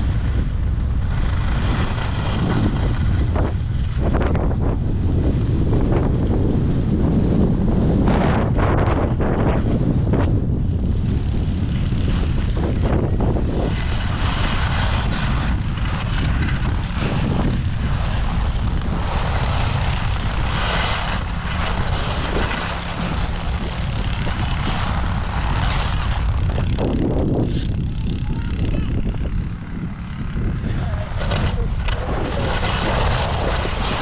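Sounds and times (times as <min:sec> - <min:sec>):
wind rumble on microphone: 0:00.0 - 0:34.0
ski edges scraping on snow: 0:01.1 - 0:04.3, 0:13.5 - 0:27.7, 0:30.5 - 0:34.0.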